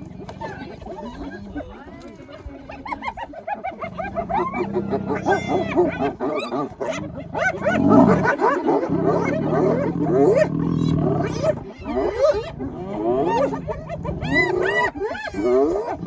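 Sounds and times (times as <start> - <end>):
hyenas whooping and yipping: 2.5 - 16.0
low growl: 3.9 - 16.0.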